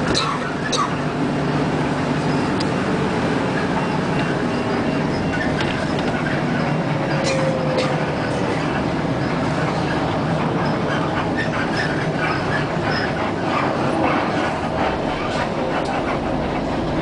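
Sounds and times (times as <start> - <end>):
vehicle ride rumble: 0.0 - 17.0
rattles and clicks: 5.2 - 17.0.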